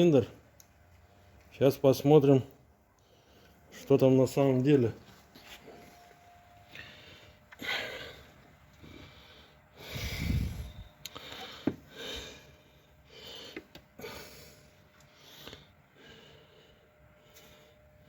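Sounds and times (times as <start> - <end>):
person breathing in noisy puffs: 6.7 - 18.0.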